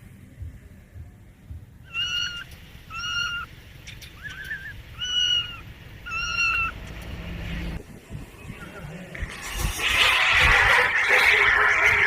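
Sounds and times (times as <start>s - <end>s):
kitten meowing: 1.9s - 3.5s, 4.2s - 6.8s.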